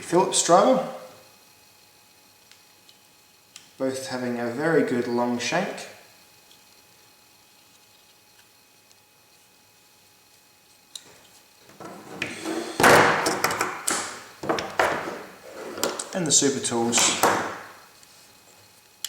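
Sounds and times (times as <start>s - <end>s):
rubbing of handled tools: 10.7s - 18.6s.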